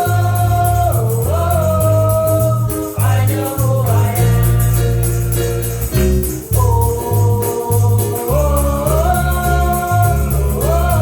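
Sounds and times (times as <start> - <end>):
band with bass and cymbals: 0.0 - 11.0.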